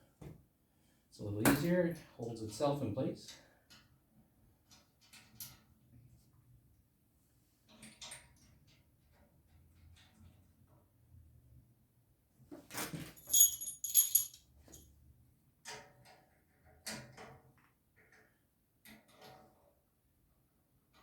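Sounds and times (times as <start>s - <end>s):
small metal parts clinking: 13.0s - 14.8s.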